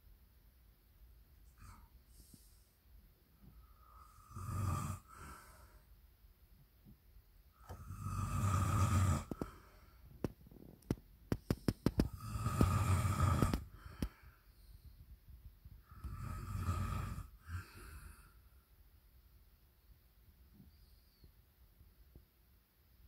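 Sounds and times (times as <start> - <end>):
loud snoring: 3.8 - 5.4, 7.6 - 9.6, 12.0 - 13.7, 15.8 - 18.1.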